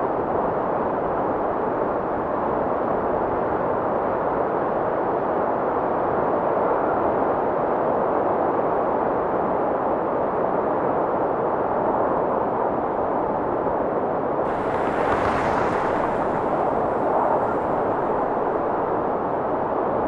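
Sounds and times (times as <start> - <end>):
blizzard wind blowing: 14.5 - 20.0.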